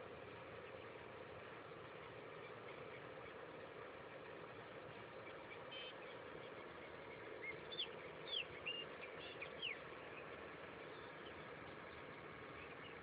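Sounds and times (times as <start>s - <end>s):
steady low hum: 0.0s - 13.0s
bird chirping: 5.1s - 13.0s.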